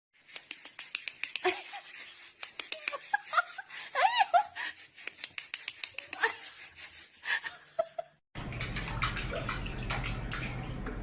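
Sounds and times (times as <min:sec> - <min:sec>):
laughter: 0:01.4 - 0:04.8, 0:07.2 - 0:08.2.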